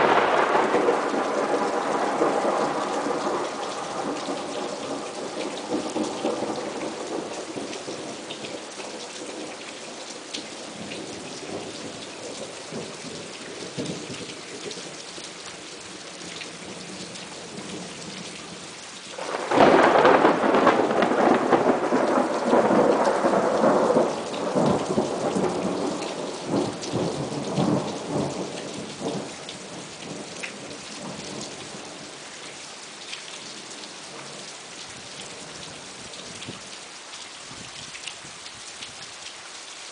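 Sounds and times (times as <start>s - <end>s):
loud thunderclap: 0.0s - 8.1s, 19.2s - 30.2s
thunder rumbling: 0.0s - 9.6s, 19.2s - 31.9s
rain falling: 0.0s - 39.9s.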